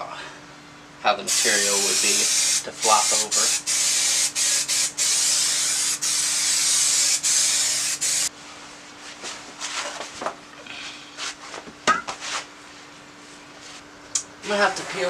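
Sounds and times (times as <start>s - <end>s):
aerosol spray hissing: 1.3s - 8.3s.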